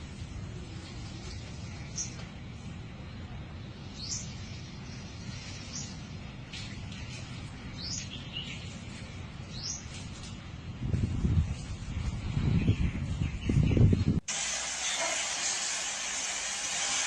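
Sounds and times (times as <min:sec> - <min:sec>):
bird chirping: 0:04.0 - 0:06.0, 0:07.1 - 0:10.0.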